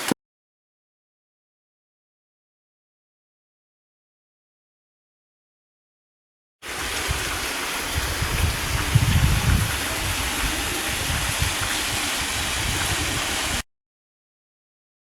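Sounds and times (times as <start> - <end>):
waterfall splashing into pool: 6.6 - 13.6.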